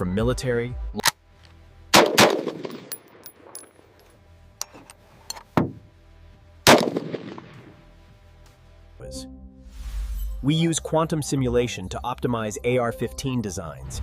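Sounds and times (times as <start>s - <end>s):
gunshots: 1.9s - 3.2s, 6.7s - 7.8s.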